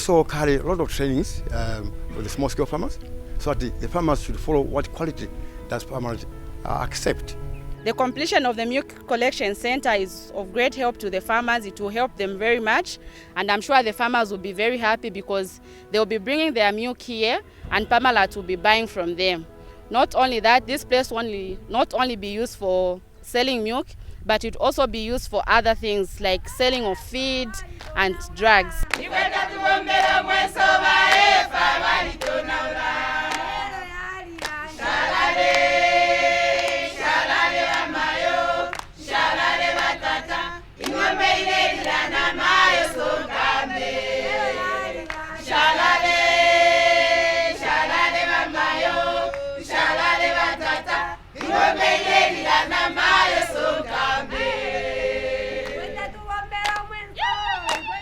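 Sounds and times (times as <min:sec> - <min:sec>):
choir singing: 0:28.4 - 0:56.9.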